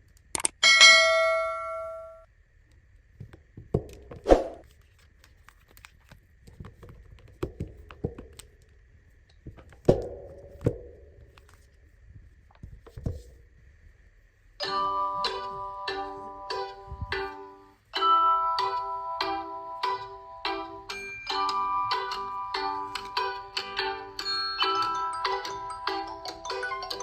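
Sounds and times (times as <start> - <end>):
chime tone ringing: 0.6 - 2.2.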